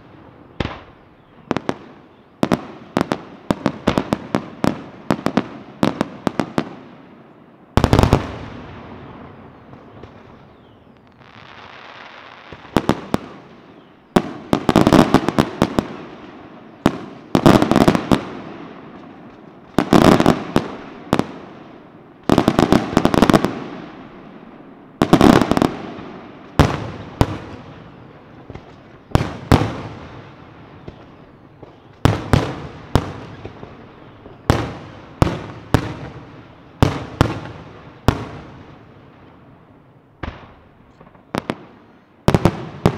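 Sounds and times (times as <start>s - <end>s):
fireworks bursting: 0.0s - 7.1s, 7.7s - 42.9s
steady hiss: 8.5s - 42.9s.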